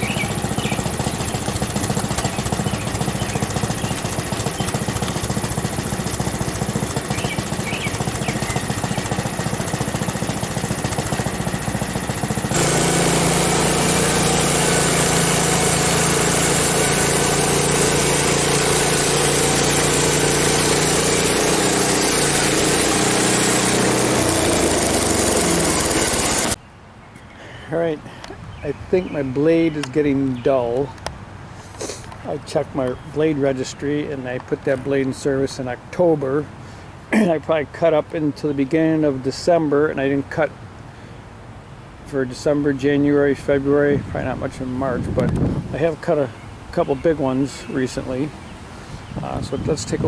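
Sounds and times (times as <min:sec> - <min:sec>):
bandsaw sawmill gas engine running: 0:00.0 - 0:26.6.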